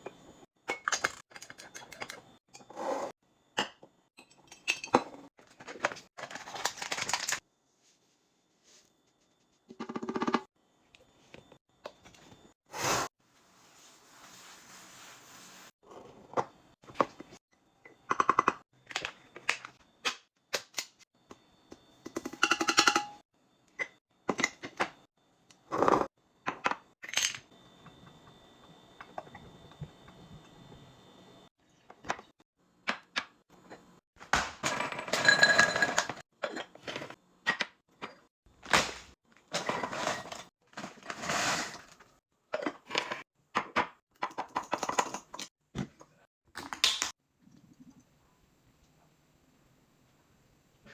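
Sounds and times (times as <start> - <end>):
containers clicking and clinking: 4.2 - 7.4.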